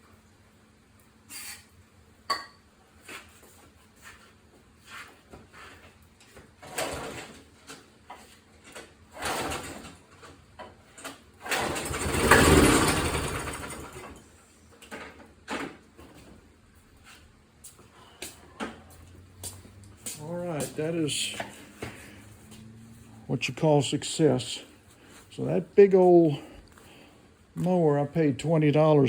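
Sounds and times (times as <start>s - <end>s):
lawnmower engine running: 11.4s - 14.2s.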